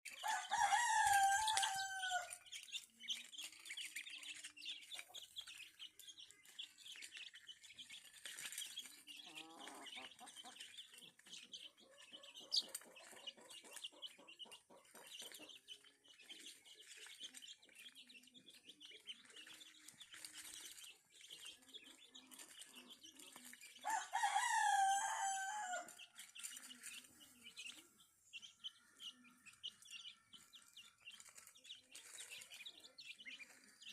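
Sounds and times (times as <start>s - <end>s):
chicks peeping: 0.1s - 33.9s
rooster crowing: 0.2s - 2.4s, 23.9s - 26.0s
hen clucking: 9.1s - 15.8s.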